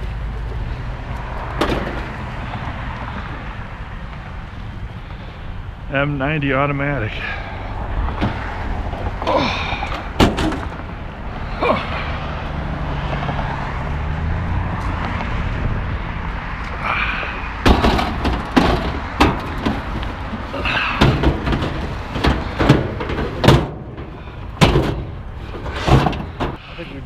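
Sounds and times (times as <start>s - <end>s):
metal equipment knocks and clunks: 1.5s - 2.2s, 9.4s - 10.9s, 17.6s - 26.6s.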